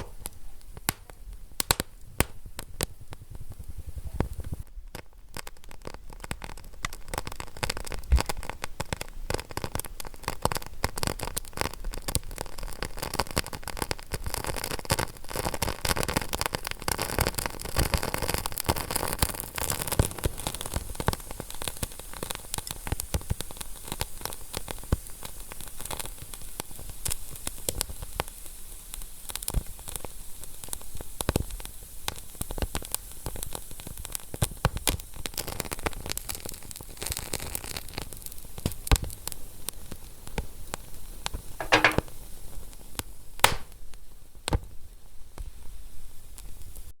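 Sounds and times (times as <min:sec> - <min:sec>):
wood fire crackling: 0:00.0 - 0:08.6, 0:43.4 - 0:43.8.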